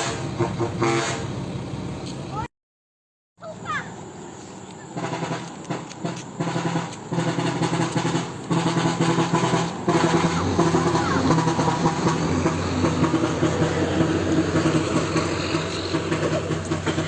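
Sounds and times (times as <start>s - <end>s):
air horn blasts: 0.0s - 1.4s, 4.9s - 17.0s.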